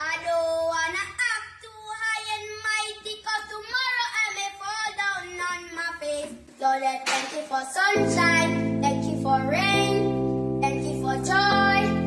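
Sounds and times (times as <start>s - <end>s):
faint backing music: 4.8s - 12.0s
high voice singing: 8.0s - 12.0s.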